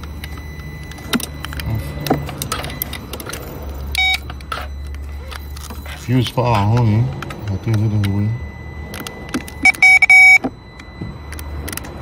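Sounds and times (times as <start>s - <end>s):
short electronic beep: 0.0s - 12.0s.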